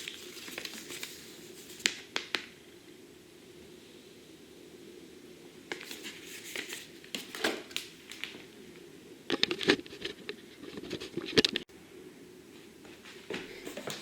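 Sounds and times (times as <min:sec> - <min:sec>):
crinkling: 0:00.0 - 0:02.6, 0:05.7 - 0:11.6.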